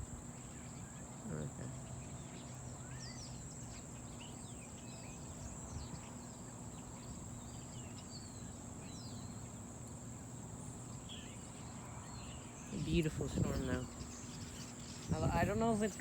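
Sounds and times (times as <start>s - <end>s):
crickets trilling: 0.0s - 16.0s
bird chirps: 0.3s - 16.0s
low outdoor rumble: 15.0s - 16.0s.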